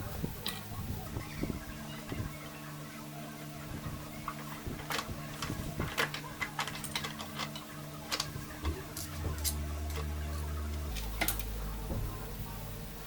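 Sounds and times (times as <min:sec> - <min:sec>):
steady low hum: 0:00.0 - 0:13.0
hand tools and metal parts clicking: 0:04.2 - 0:11.6.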